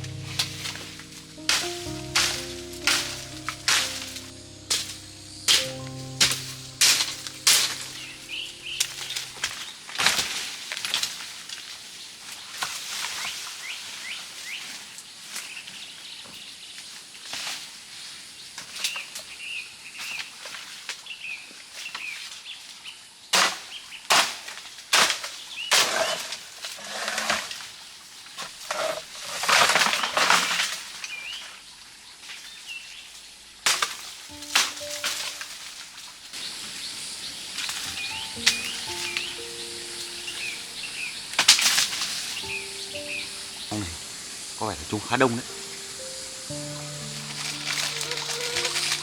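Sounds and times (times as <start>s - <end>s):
small birds chirping: 0.0s - 9.5s, 36.4s - 49.0s.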